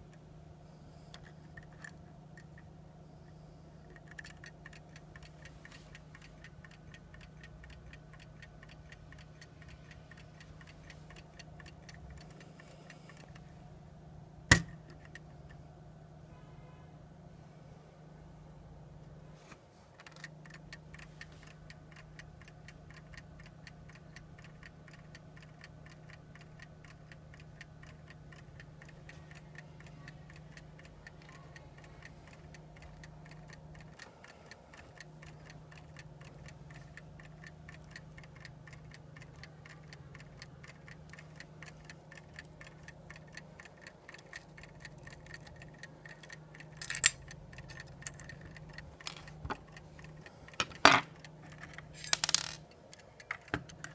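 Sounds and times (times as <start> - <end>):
clock ticking: 3.9 - 13.4, 20.0 - 51.8.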